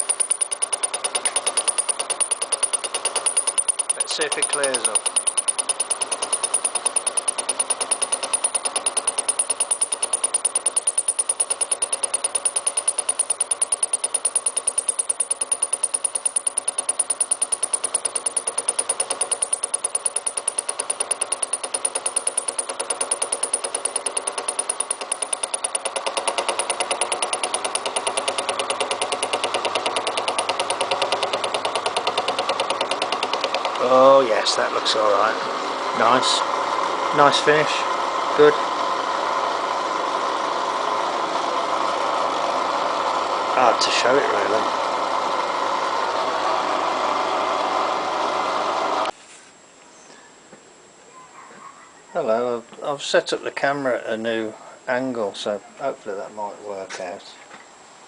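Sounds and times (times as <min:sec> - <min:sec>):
fly cutter ticking on steel: 0:00.0 - 0:34.3
milling machine motor whine: 0:00.0 - 0:35.0.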